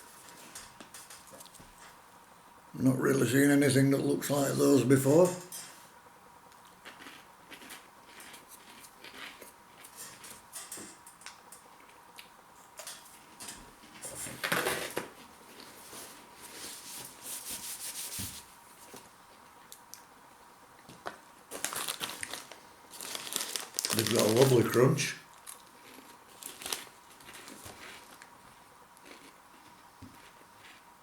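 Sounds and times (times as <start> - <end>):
crunching and chewing snacks: 6.6 - 10.4, 20.8 - 30.8.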